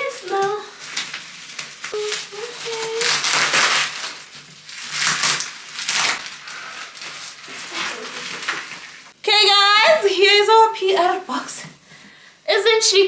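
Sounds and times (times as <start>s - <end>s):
packaging rustling and crinkling: 0.0s - 9.2s.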